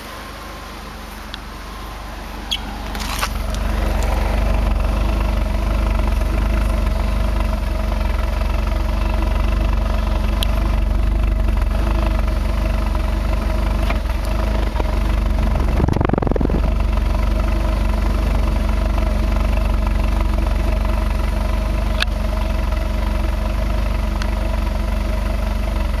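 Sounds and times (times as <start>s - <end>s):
car engine idling roughly: 0.0s - 26.0s
brief low rumble: 15.4s - 16.9s.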